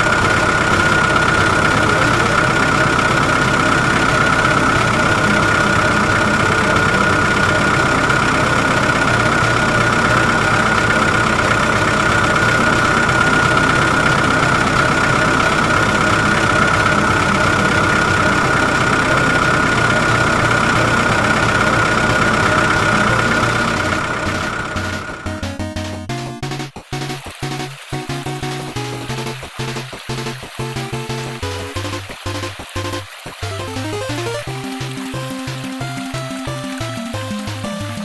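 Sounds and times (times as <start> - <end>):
high motor whine: 0.0 - 25.6
toy excavator motor droning: 0.0 - 38.0.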